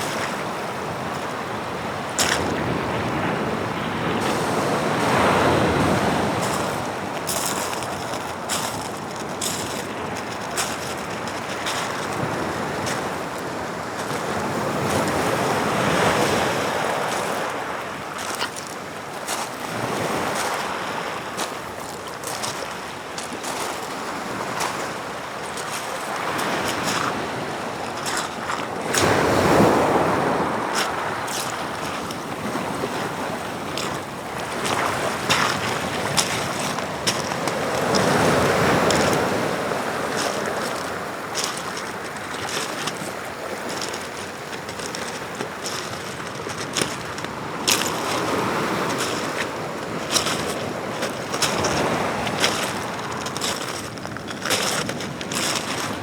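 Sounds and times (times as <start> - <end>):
surf breaking on rocky shore: 0.0 - 56.0.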